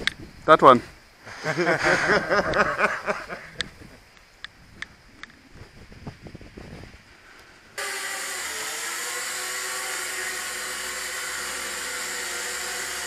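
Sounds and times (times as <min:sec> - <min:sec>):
quadcopter propellers whining: 0:07.8 - 0:13.0.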